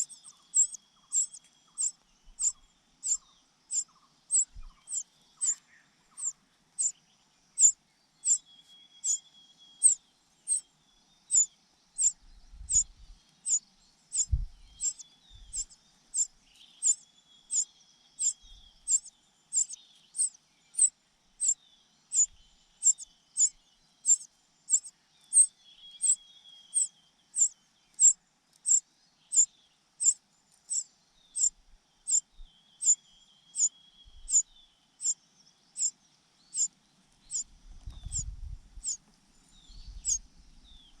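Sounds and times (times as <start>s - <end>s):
cuckoo chick begging call: 0.0s - 5.6s, 6.2s - 6.9s, 7.6s - 8.4s, 18.2s - 23.5s, 24.1s - 26.2s
faint chirps of young birds: 0.0s - 41.0s.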